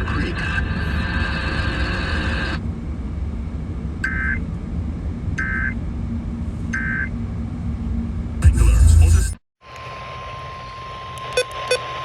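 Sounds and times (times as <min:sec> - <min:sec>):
radio hum and hiss: 0:00.0 - 0:02.6.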